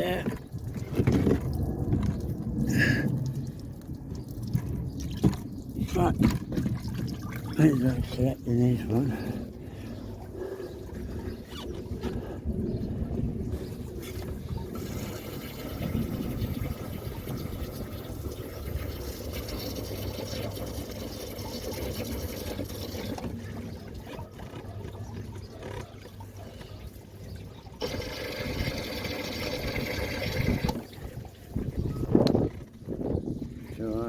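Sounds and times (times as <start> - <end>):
hose water flushing through radiator: 13.9 - 24.1, 27.8 - 31.8.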